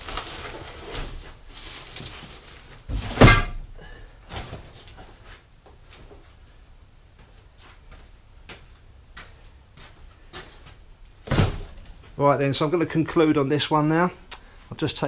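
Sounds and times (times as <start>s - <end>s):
objects knocking and clunking: 2.8s - 5.0s
heavy thud: 2.9s - 3.8s, 11.2s - 11.8s.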